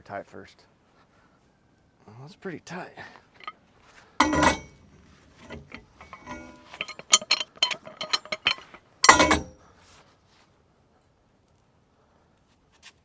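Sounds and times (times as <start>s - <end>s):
loud metallic clank: 4.2s - 9.5s
pipe wrench clinking on steel pipe: 4.2s - 9.6s.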